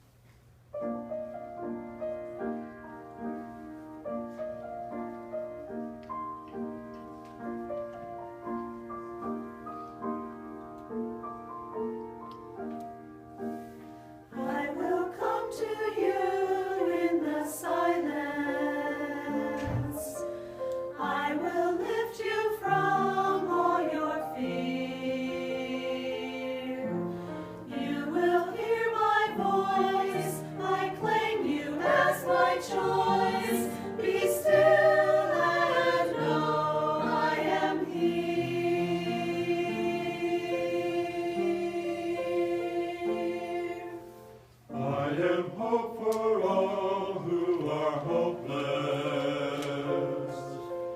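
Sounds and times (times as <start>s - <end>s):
choir singing: 14.3s - 50.9s.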